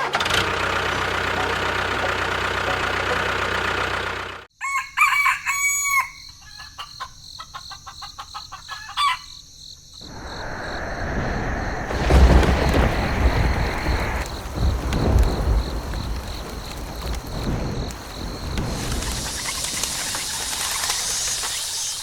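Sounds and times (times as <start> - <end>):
rushing noise: 10.0 - 22.0.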